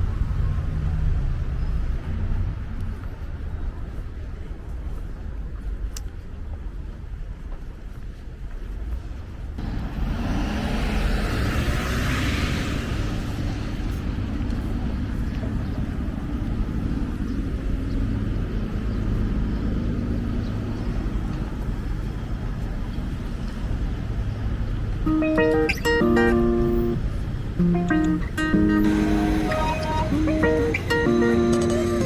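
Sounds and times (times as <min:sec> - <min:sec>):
vehicle rumble in motion: 0:00.0 - 0:32.0
hiss: 0:28.8 - 0:30.8.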